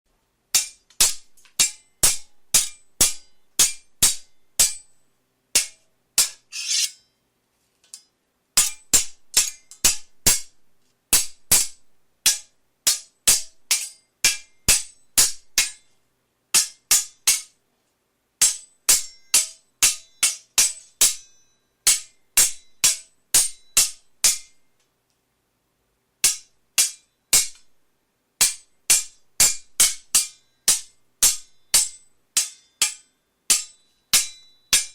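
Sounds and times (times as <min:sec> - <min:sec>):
steel swords clashing: 0:00.6 - 0:04.8, 0:05.6 - 0:07.2, 0:08.0 - 0:10.1, 0:13.7 - 0:14.9, 0:28.4 - 0:34.9
blade-on-blade scrape: 0:06.5 - 0:07.0.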